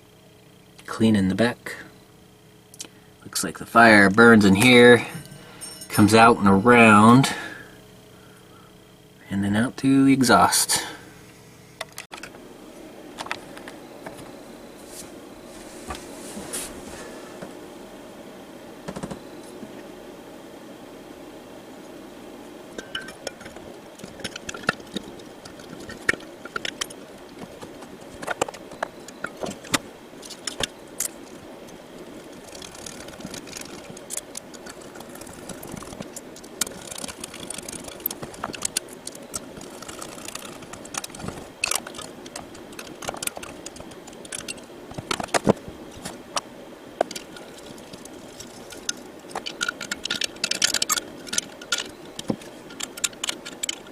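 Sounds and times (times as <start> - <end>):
steady hum: 0.0 - 53.9
metal and plastic parts clicking: 22.8 - 31.4, 32.2 - 46.2, 47.0 - 53.9.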